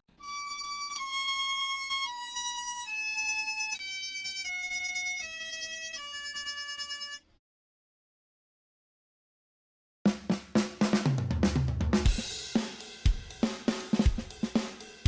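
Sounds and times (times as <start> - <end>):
electronic instrument slow melody: 0.2 - 7.3.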